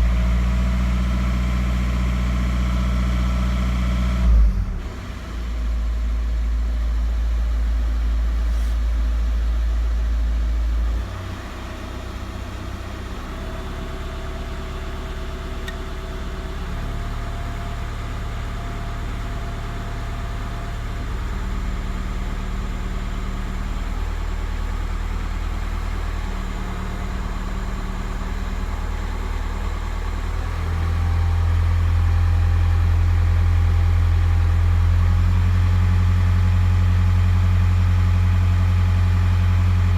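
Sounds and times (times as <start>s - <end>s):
diesel engine idling with knock: 12.3s - 39.9s.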